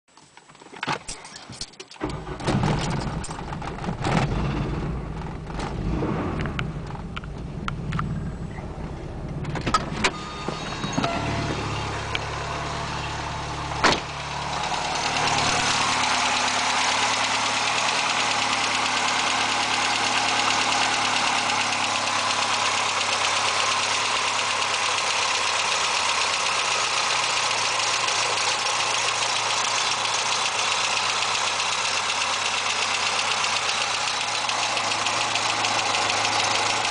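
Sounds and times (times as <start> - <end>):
car engine cranking and idling: 1.1 - 36.9.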